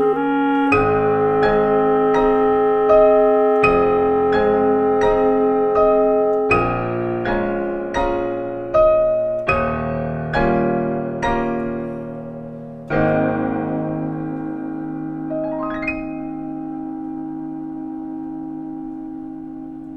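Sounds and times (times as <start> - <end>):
piano playing slow chords: 0.0 - 19.9
rising run of high piano notes: 0.0 - 19.9.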